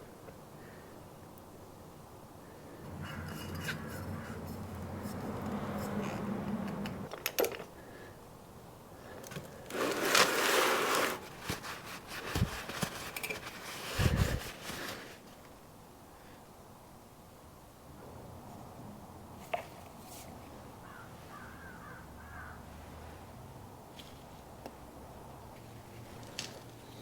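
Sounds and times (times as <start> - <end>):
tools scraping and clicking: 2.9 - 7.7.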